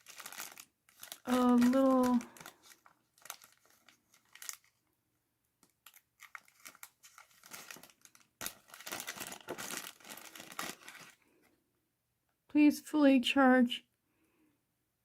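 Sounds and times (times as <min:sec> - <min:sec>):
packaging crinkling: 0:00.0 - 0:04.9, 0:05.6 - 0:11.3.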